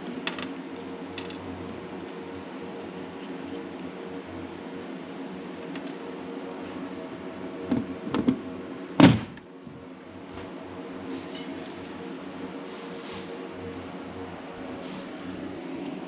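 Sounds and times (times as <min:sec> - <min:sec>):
steady background hum: 0:00.0 - 0:16.0
loud thud: 0:09.0 - 0:09.4.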